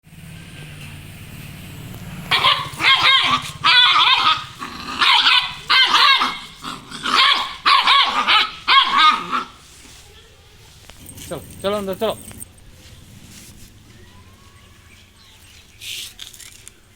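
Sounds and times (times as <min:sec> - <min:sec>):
dog barking: 0:02.3 - 0:09.6
low steady hum: 0:10.8 - 0:15.7.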